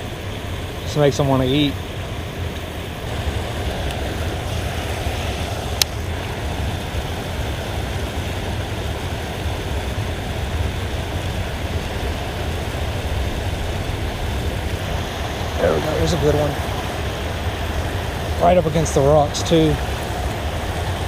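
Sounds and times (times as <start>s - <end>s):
water rushing over spillway: 0.0s - 21.0s.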